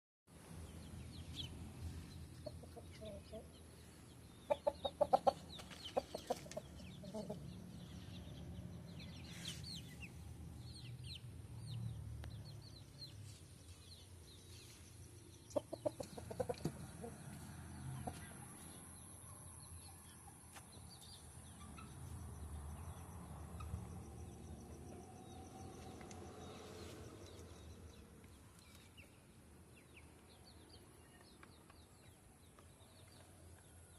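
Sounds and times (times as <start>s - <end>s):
hens clucking: 4.5s - 7.5s, 15.5s - 17.2s.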